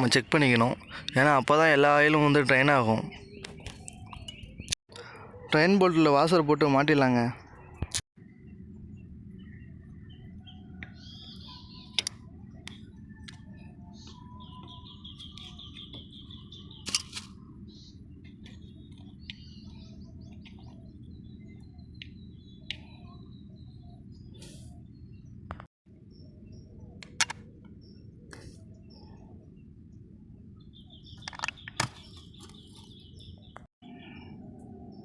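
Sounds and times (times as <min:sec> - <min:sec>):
birds chirping: 0:00.0 - 0:35.0
sharp clicks: 0:27.0 - 0:27.5.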